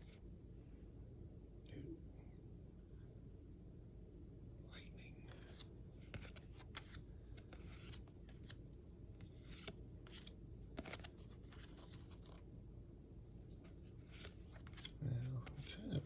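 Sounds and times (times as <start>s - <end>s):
cards clicking and flicking: 5.3s - 8.6s, 9.2s - 12.4s, 14.0s - 15.7s.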